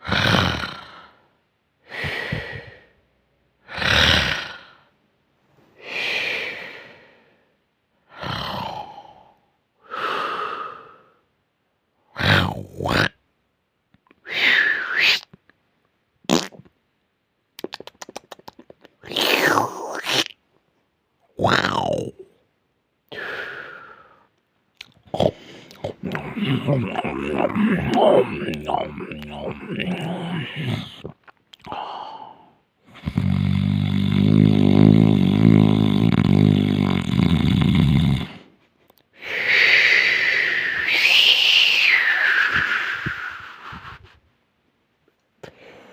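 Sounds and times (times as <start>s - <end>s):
person snoring: 0.0s - 3.0s, 3.6s - 4.9s, 5.8s - 7.4s, 8.1s - 11.2s, 12.2s - 13.2s, 19.0s - 20.3s, 21.4s - 22.4s, 25.0s - 38.5s, 39.2s - 44.1s.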